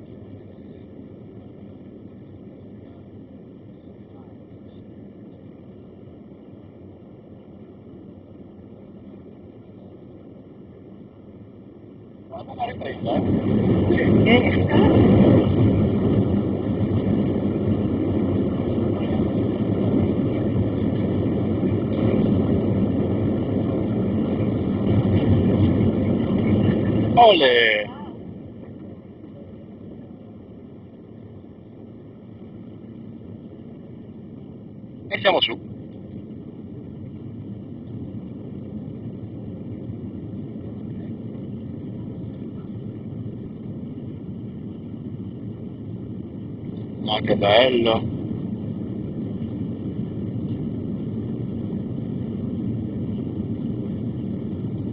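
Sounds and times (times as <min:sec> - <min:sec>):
airflow: 0:00.0 - 0:54.9
jet engines roaring in cabin: 0:00.0 - 0:54.9.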